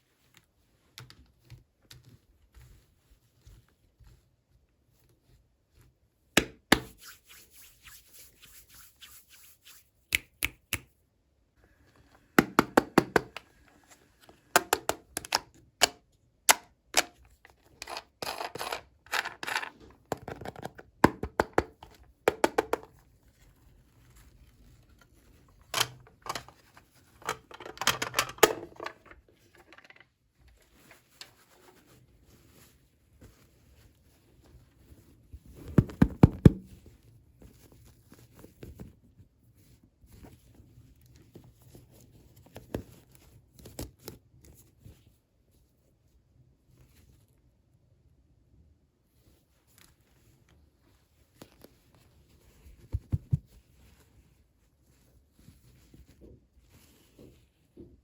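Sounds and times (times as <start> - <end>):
plastic toys clicking and tapping: 27.2 - 30.1.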